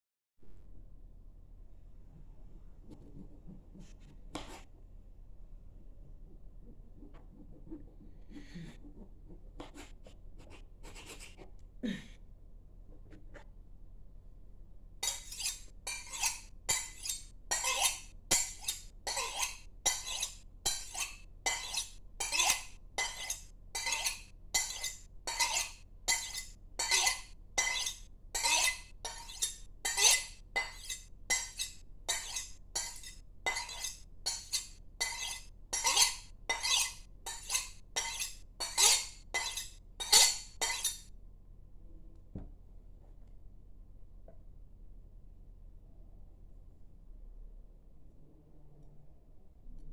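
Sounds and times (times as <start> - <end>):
knife scraping on cup rim: 15.0 - 41.1.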